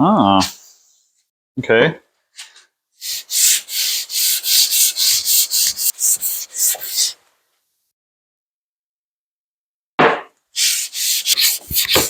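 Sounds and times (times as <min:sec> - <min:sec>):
metal rasping on sandpaper: 0:03.0 - 0:07.2, 0:10.6 - 0:12.0.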